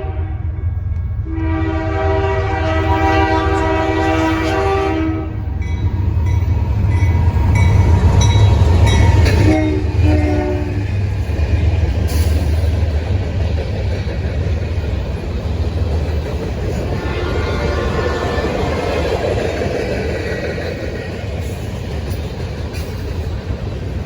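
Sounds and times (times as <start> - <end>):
locomotive horn: 0.0 - 5.7, 8.8 - 10.9, 16.8 - 19.0
train rumbling past: 0.0 - 24.0.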